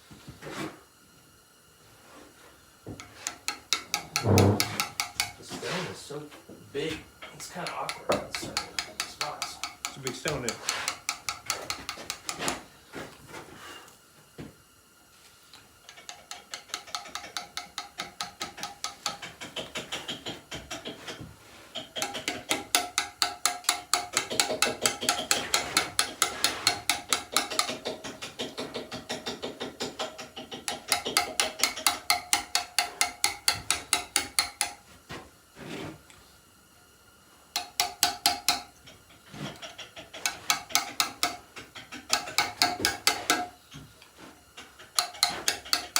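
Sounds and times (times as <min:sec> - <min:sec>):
mallet striking steel chisel: 0:03.2 - 0:05.4, 0:07.6 - 0:12.6, 0:22.0 - 0:27.8, 0:29.3 - 0:34.8, 0:37.6 - 0:38.7, 0:40.1 - 0:43.5, 0:45.0 - 0:45.9.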